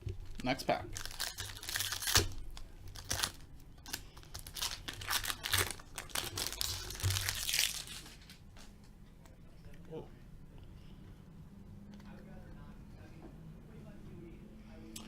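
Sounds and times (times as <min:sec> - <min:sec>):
wrapper tearing and crinkling: 0:00.3 - 0:08.4.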